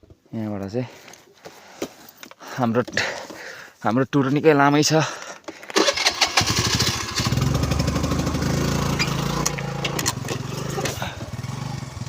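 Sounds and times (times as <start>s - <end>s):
small engine starting and idling: 5.8s - 12.0s.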